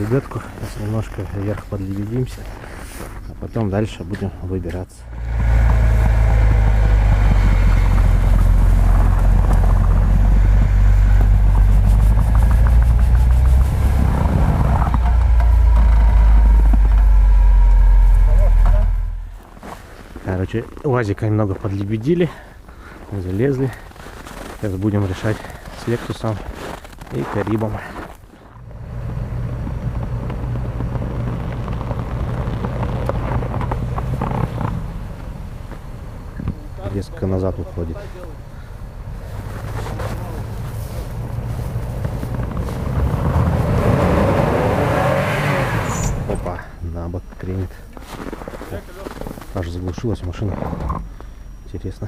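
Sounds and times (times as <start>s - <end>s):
vehicle engine running: 4.2s - 20.2s, 28.0s - 52.0s.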